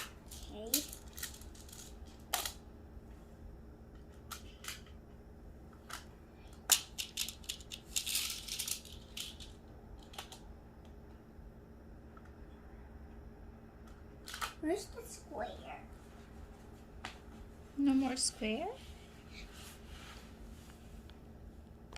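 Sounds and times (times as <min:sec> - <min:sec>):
plastic tiles rattling clatter: 0:00.3 - 0:02.6, 0:06.7 - 0:10.4.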